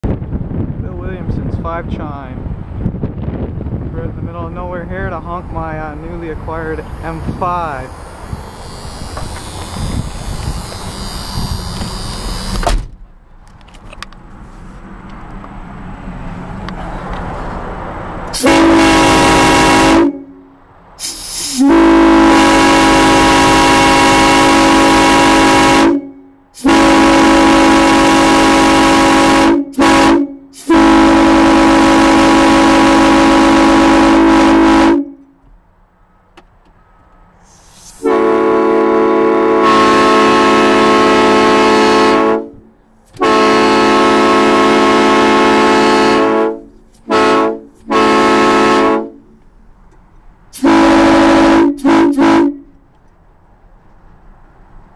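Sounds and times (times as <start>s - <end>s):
locomotive air horn chord: 18.3s - 35.4s, 37.4s - 49.3s, 50.5s - 52.7s.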